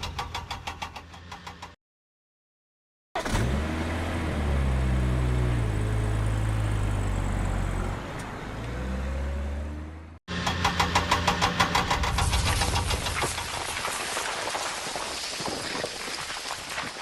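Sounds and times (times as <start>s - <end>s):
tractor engine running: 0.0s - 1.8s, 10.3s - 14.2s
fast even clatter: 10.3s - 17.0s.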